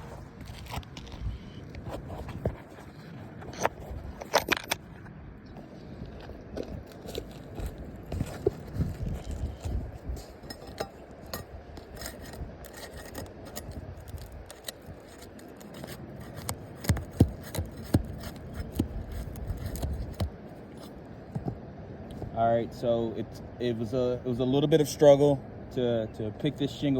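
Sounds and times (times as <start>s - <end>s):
roof shingle scraping and crackling: 0.0s - 5.0s, 6.2s - 21.6s.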